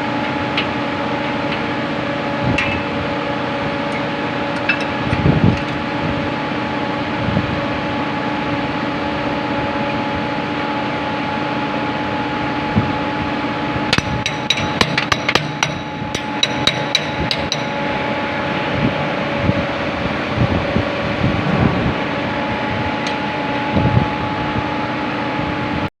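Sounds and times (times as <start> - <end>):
machinery hum: 0.0 - 25.9
hand tools clicking on metal: 13.9 - 18.0.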